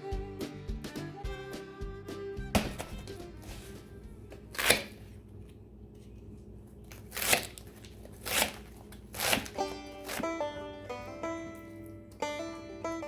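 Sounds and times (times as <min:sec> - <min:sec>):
string band music: 0:00.0 - 0:03.6.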